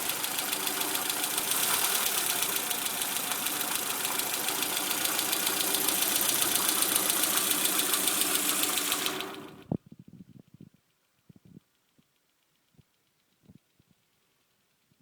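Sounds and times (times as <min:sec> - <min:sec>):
car engine running with ticking: 0:00.0 - 0:09.8
engine knock as it stops: 0:00.0 - 0:09.8.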